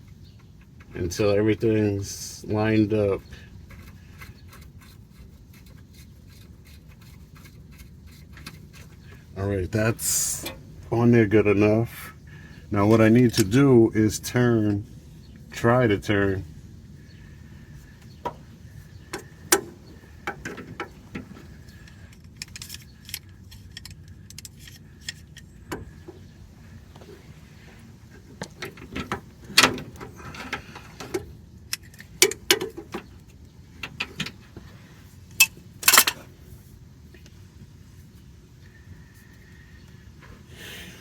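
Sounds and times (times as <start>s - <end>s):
metal parts and tools clinking: 35.4s - 36.3s.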